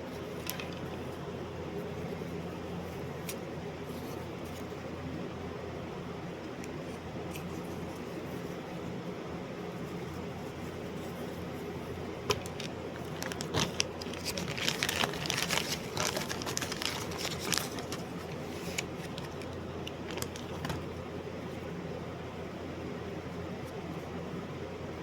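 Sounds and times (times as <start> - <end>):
rustling and crinkling: 0.0 - 4.8, 9.7 - 21.0
steady low hum: 0.0 - 25.0.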